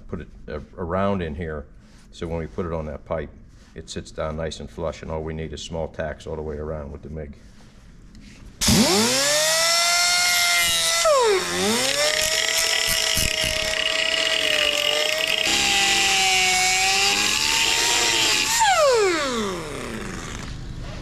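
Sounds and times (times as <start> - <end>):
electric power tool whining: 8.6 - 20.6.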